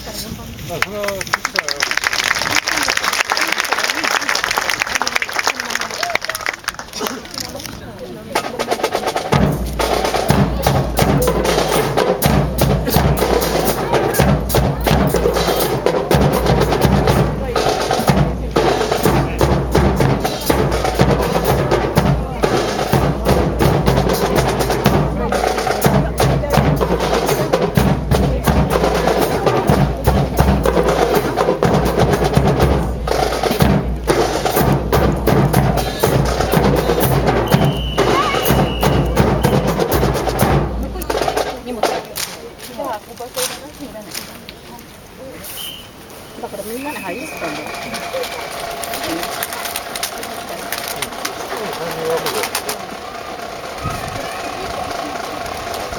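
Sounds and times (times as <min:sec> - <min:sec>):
snare drums playing cadence: 0:08.4 - 0:42.4
booming bass drum: 0:09.2 - 0:42.0.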